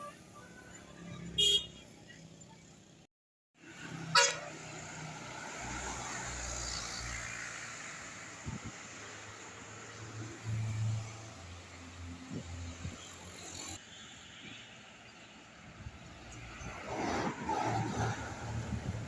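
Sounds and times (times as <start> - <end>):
vehicle horn toots: 1.3 - 1.8, 4.1 - 4.6.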